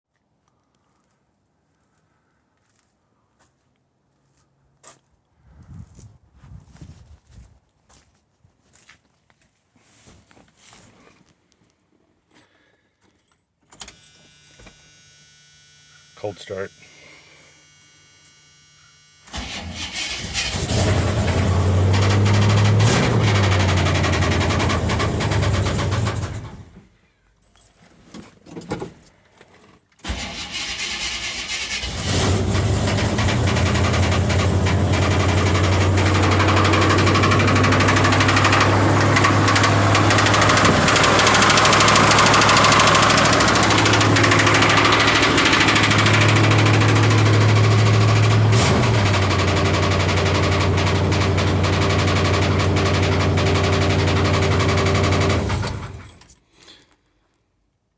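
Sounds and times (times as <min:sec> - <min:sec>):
car engine idling with lifter tick: 0:32.8 - 0:55.6.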